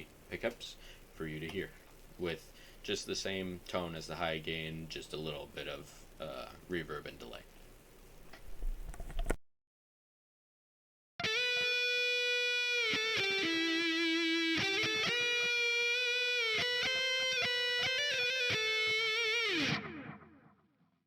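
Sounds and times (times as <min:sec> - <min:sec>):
distorted electric guitar lead: 0:11.2 - 0:20.8.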